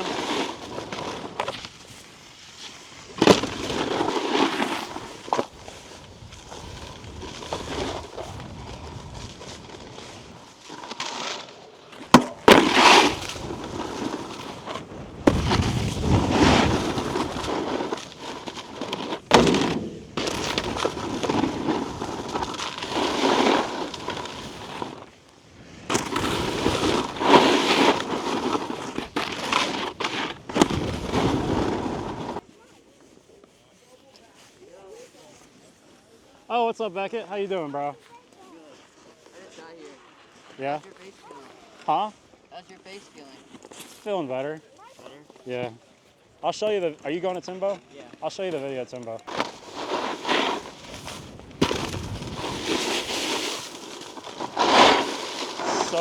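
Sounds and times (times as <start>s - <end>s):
snowboard scraping on icy snow: 0.0s - 45.8s, 48.3s - 56.0s.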